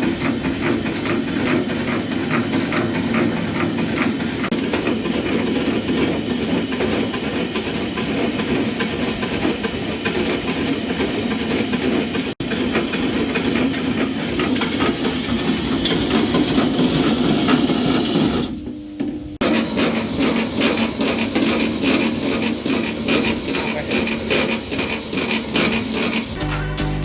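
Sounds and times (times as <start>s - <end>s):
screw conveyor machine rattling: 0.0s - 18.6s, 19.4s - 26.4s.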